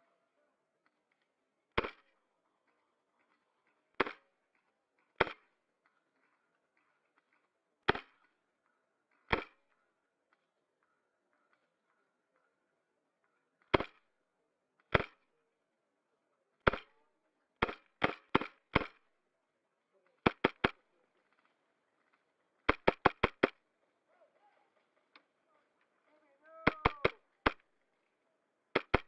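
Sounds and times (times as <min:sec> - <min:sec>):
airsoft guns firing: 0:16.6 - 0:17.0, 0:17.6 - 0:19.0, 0:20.2 - 0:20.8, 0:22.6 - 0:23.6, 0:26.6 - 0:27.7, 0:28.7 - 0:29.0.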